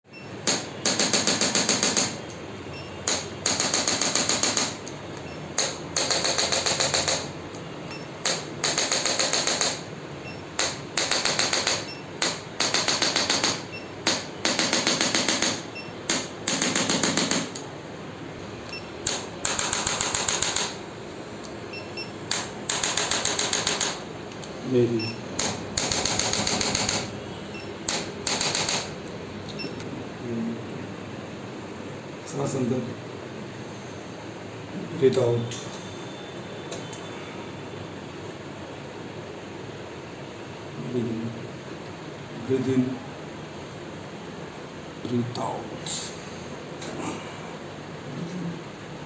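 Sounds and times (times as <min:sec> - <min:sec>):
rapid mechanical tapping: 0:00.4 - 0:02.4, 0:03.0 - 0:09.9, 0:10.5 - 0:17.7, 0:18.6 - 0:29.2.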